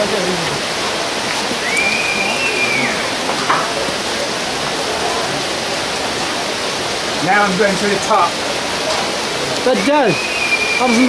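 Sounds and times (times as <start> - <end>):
waterfall roaring: 0.0 - 11.0
whistle-like note: 1.6 - 3.1, 10.1 - 11.0.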